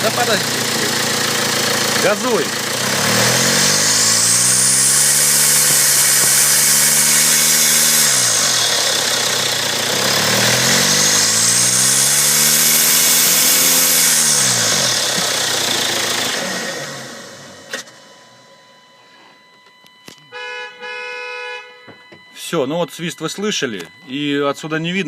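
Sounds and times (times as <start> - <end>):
engine revving: 0.0 - 18.0
turbocharger whistle: 2.3 - 18.4, 20.1 - 22.6.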